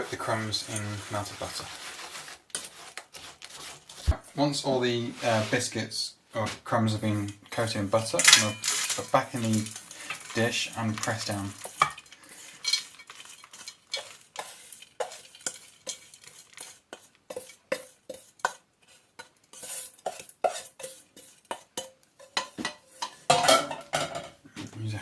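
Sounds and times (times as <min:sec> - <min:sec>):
spoon scraping and clinking a pan: 0:00.0 - 0:03.3, 0:08.0 - 0:24.3.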